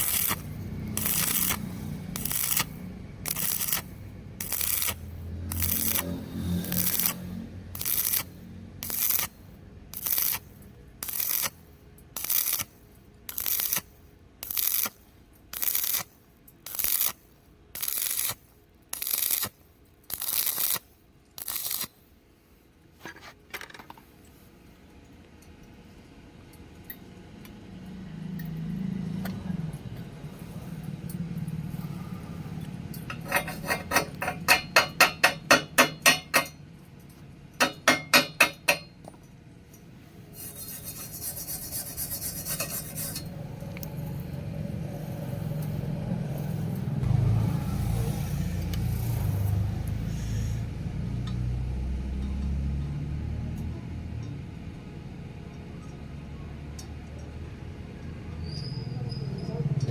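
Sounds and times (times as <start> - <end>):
hand tool scraping steel: 3.3 - 9.3, 33.0 - 36.6, 40.3 - 44.2
low hum: 26.1 - 35.0, 39.6 - 58.3
sharp metallic taps: 33.1 - 36.6, 37.6 - 39.2.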